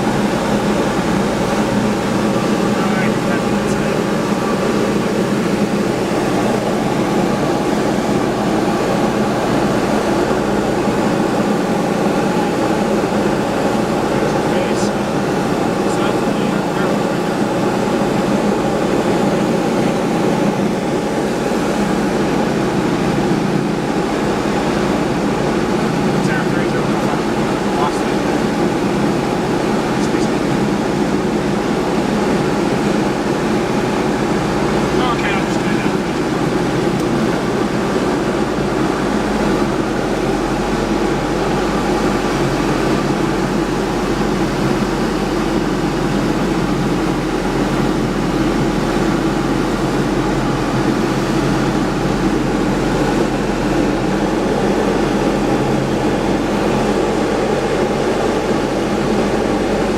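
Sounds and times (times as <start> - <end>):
aircraft engine and propeller drone: 0.0 - 59.9.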